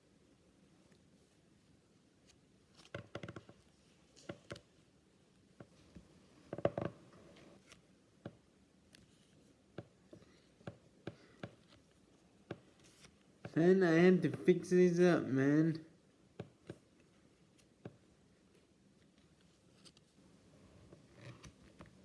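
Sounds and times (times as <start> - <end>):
card rustle: 12.6 - 13.3, 21.1 - 22.0.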